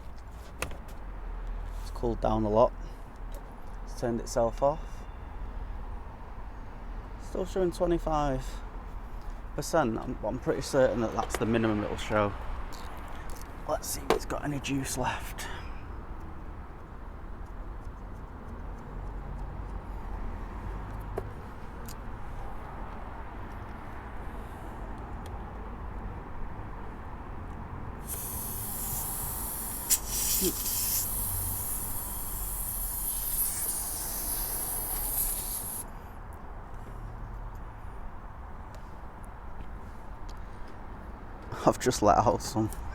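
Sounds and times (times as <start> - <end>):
air hissing from tyre valve: 28.0 - 36.2.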